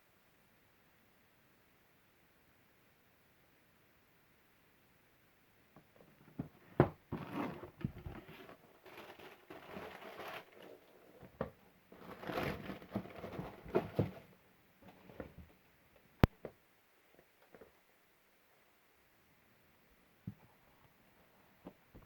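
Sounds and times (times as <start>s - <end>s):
paper packaging crinkling: 7.1s - 11.2s, 12.0s - 14.2s.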